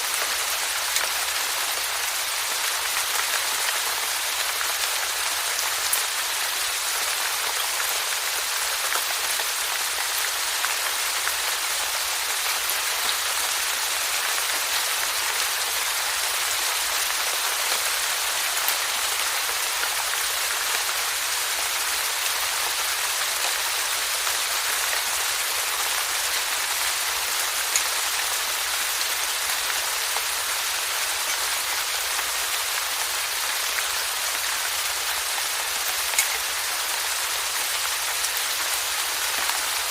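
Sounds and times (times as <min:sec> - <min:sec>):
rain hissing: 0:00.0 - 0:39.9
raindrops ticking: 0:36.0 - 0:36.7.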